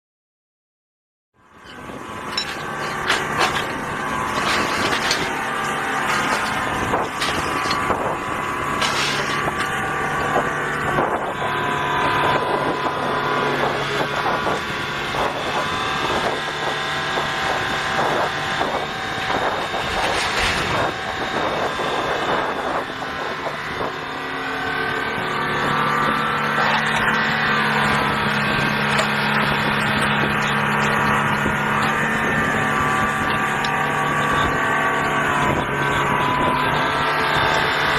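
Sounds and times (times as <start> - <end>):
excavator diesel engine running: 1.4 - 37.9
sharp metal clanks and knocks: 1.6 - 10.6.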